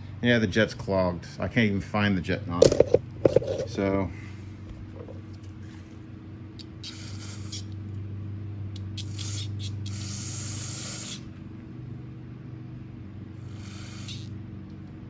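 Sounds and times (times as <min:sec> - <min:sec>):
aerosol spray hissing: 0:06.8 - 0:07.7, 0:09.0 - 0:11.3, 0:13.4 - 0:14.3.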